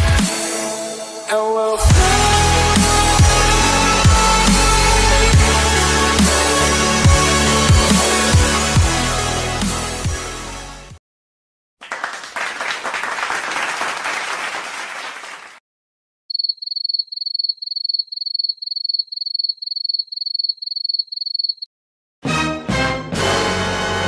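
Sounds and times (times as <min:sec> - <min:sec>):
music: 0:00.0 - 0:11.0, 0:22.2 - 0:24.0
crowd applause: 0:11.8 - 0:15.6.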